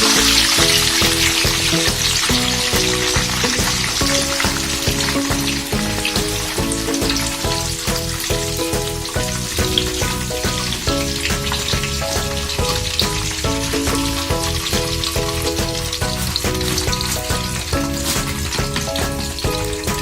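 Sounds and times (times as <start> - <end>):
background music with beat: 0.0 - 20.0
food sizzling in frying oil: 0.0 - 20.0.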